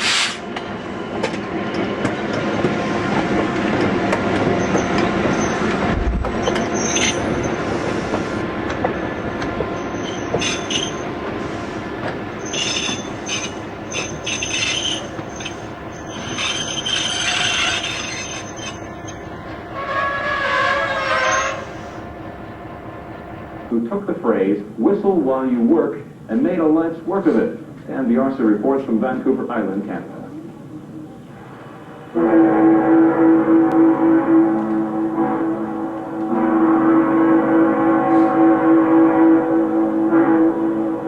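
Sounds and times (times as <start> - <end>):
train engine and wheels rumbling: 0.0 - 41.0
locomotive air horn: 9.8 - 22.0, 31.5 - 41.0.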